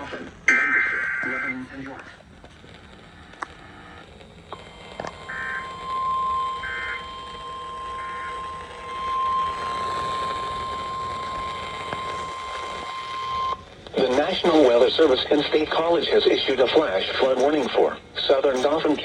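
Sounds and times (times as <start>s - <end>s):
steady high tone: 0.0s - 2.2s, 4.6s - 14.7s
buzzy digital data bursts: 0.0s - 19.0s.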